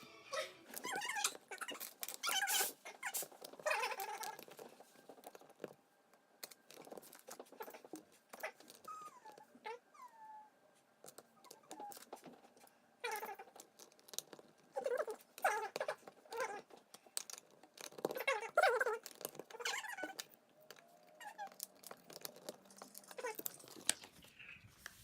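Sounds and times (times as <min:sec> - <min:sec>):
dog whining: 0:00.3 - 0:04.7, 0:07.5 - 0:10.6, 0:11.2 - 0:12.1, 0:13.0 - 0:13.7, 0:14.7 - 0:16.8, 0:17.8 - 0:23.8.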